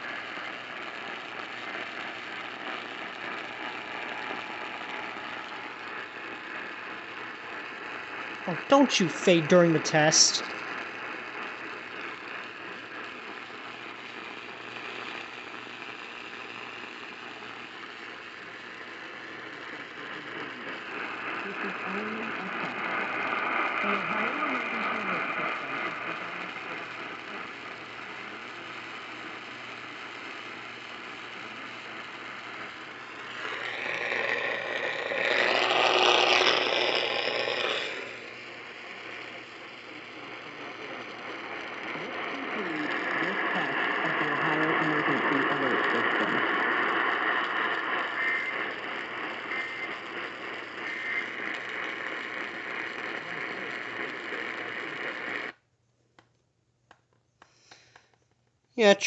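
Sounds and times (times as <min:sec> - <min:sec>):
radio static hiss: 0:00.0 - 0:55.6
faint radio station audio: 0:08.5 - 0:10.5, 0:19.4 - 0:28.7, 0:39.0 - 0:55.4, 0:58.8 - 0:59.0.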